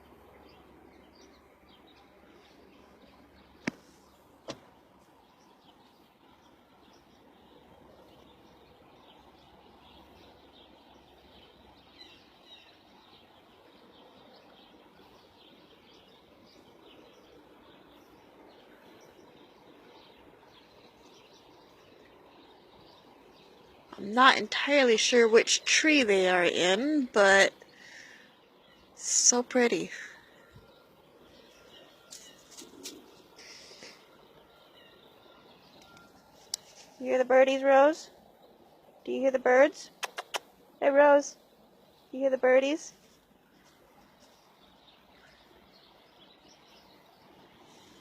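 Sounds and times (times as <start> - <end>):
low background noise: 0.0 - 48.0
wild birds chirping: 0.0 - 48.0
sharp clicks: 39.9 - 40.5.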